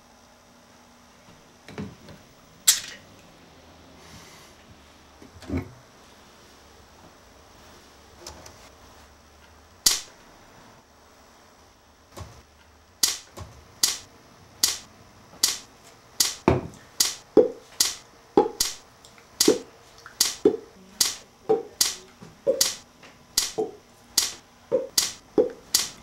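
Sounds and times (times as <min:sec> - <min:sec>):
sharp pops with hollow tone: 0:23.4 - 0:26.0.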